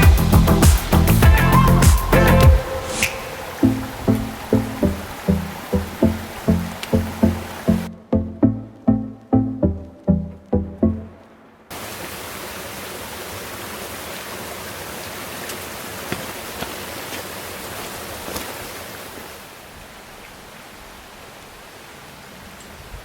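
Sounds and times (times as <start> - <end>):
falling water rushing: 0.0 - 8.0, 11.0 - 22.6
plucked music notes: 3.6 - 11.3.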